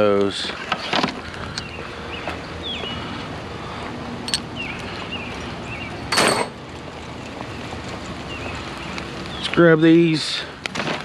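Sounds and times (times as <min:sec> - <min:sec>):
rain falling: 0:04.4 - 0:11.0.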